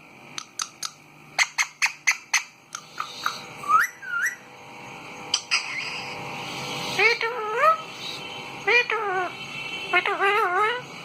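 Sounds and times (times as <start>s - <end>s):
parrot clicks and chirps: 0.3s - 3.4s
parrot rising whistles: 3.6s - 4.4s.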